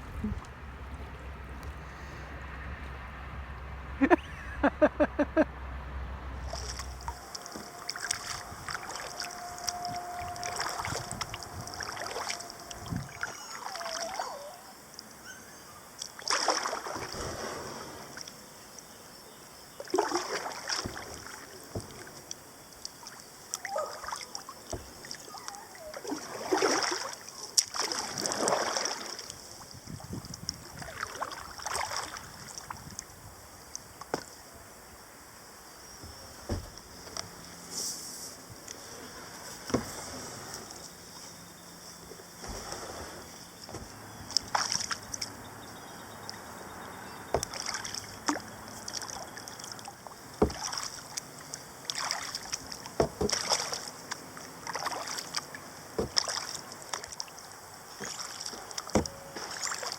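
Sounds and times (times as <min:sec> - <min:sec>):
paddle splashing in water: 0:06.4 - 0:14.5, 0:16.0 - 0:18.4, 0:19.8 - 0:33.0, 0:38.6 - 0:41.2, 0:42.1 - 0:45.4, 0:47.1 - 0:59.9.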